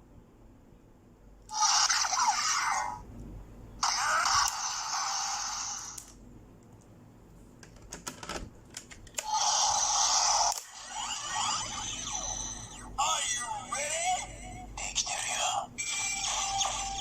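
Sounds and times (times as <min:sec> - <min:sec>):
electronic toy sound effects: 0:01.5 - 0:03.0, 0:03.8 - 0:06.0, 0:09.2 - 0:17.0
sliding electronic tones: 0:09.2 - 0:13.0.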